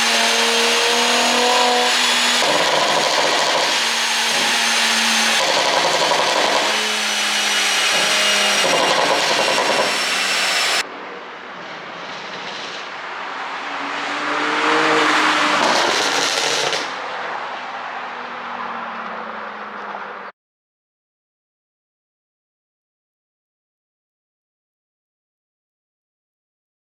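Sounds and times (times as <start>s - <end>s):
car exhaust revving: 0.0s - 10.8s, 11.8s - 17.0s.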